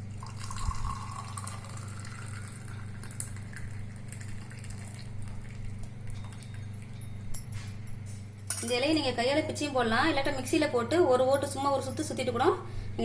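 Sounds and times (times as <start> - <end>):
steady low hum: 0.0 - 13.0
liquid pouring and splashing: 0.2 - 6.7.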